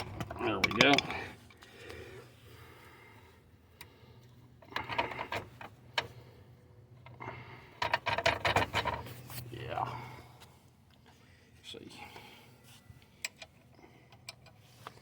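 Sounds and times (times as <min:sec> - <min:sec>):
low steady hum: 0:00.0 - 0:15.0
metal clicks and knocks of hand tools: 0:00.2 - 0:01.6.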